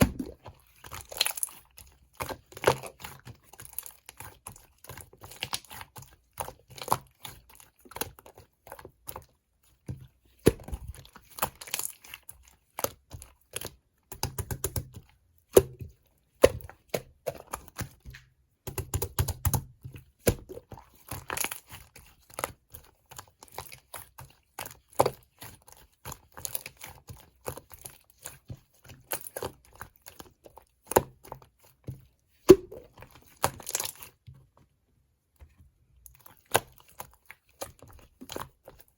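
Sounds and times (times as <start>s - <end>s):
slime being squished by hand: 0.0s - 9.8s, 10.4s - 34.2s, 36.0s - 38.9s.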